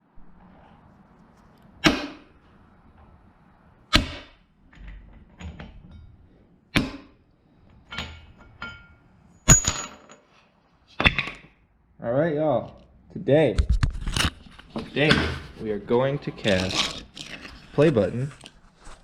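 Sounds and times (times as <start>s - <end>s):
sharp knocks and metal clanks: 1.8s - 3.2s, 3.9s - 11.6s, 14.6s - 15.6s.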